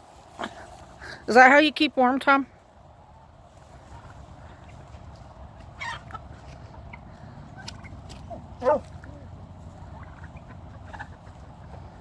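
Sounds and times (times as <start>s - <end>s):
poultry calling: 3.2s - 12.0s.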